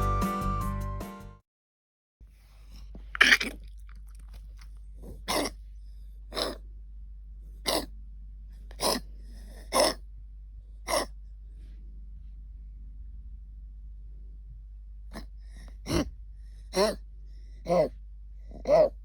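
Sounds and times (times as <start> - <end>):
puppy coughing: 3.1 - 3.9, 5.0 - 5.6, 6.3 - 6.6, 7.6 - 7.9, 8.7 - 10.0, 10.8 - 11.1, 15.1 - 17.0, 17.6 - 19.0.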